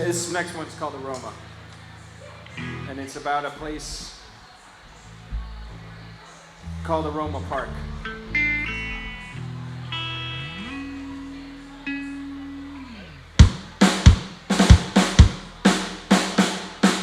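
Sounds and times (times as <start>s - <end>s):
bass guitar notes: 2.5s - 3.0s, 6.6s - 17.0s
electric guitar: 7.7s - 13.7s
drum kit beat: 13.4s - 17.0s.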